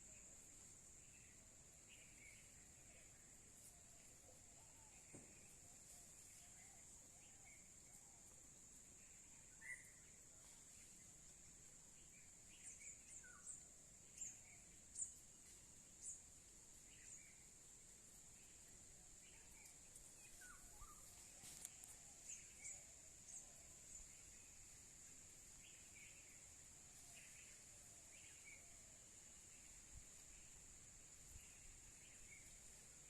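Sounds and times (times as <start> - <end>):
bird chirps: 9.0 - 10.2, 19.2 - 24.6.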